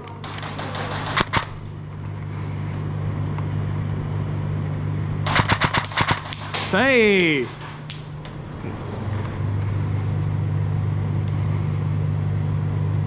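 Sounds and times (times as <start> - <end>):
steady low hum: 0.0 - 13.0
airsoft gun firing: 0.3 - 1.7, 5.3 - 8.2
sharp clicks: 5.3 - 8.4.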